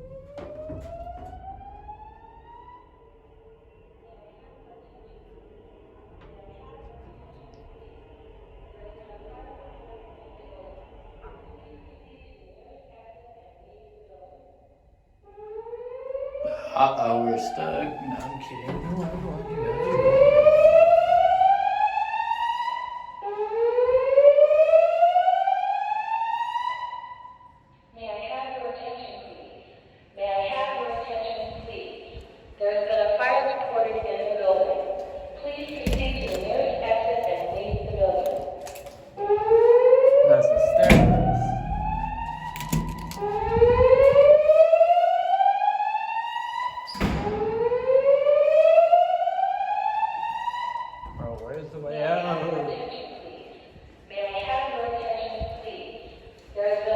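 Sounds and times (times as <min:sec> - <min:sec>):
fire alarm whoop tone: 0:15.3 - 0:27.6, 0:39.2 - 0:51.2
whoop evacuation tone: 0:17.7 - 0:22.9.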